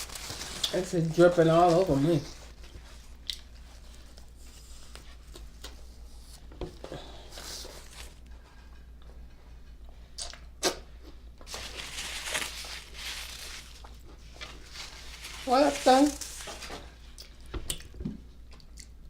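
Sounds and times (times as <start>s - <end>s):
low steady hum: 0.0s - 19.0s
wet chewing and mouth clicks: 17.2s - 19.0s.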